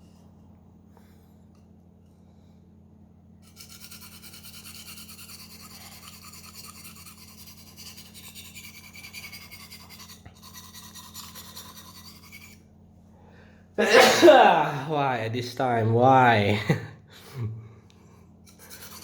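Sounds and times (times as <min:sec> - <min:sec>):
steady low hum: 0:00.0 - 0:19.0
knife scraping on sharpening stone: 0:03.5 - 0:12.6, 0:18.5 - 0:19.0.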